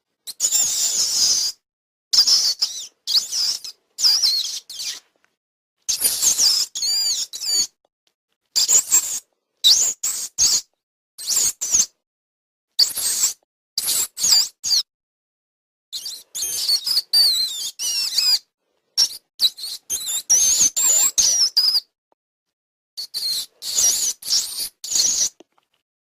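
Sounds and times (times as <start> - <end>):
mouse squeaking: 0.3 - 1.6, 2.2 - 5.0, 5.9 - 7.8, 8.6 - 11.9, 12.8 - 14.9, 15.9 - 21.9, 23.0 - 25.6.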